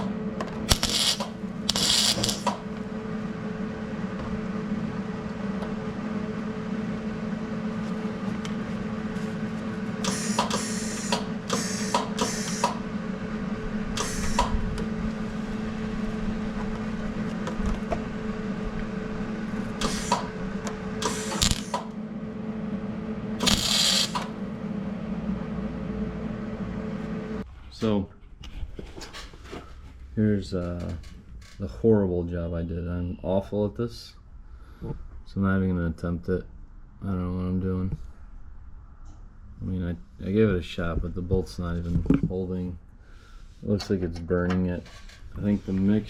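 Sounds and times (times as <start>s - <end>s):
welding arc crackle: 0.0s - 2.7s, 19.8s - 20.4s, 21.0s - 21.9s, 23.4s - 24.3s
welder humming: 0.0s - 27.4s.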